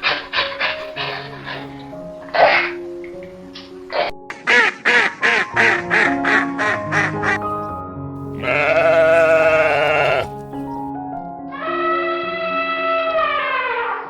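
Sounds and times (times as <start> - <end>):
background music: 0.0 - 14.0
long wavering bleat: 8.4 - 10.5.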